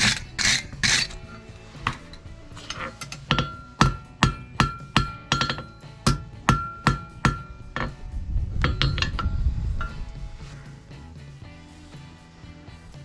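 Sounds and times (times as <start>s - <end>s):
hammer striking steel on anvil: 1.8s - 8.0s, 8.6s - 10.2s.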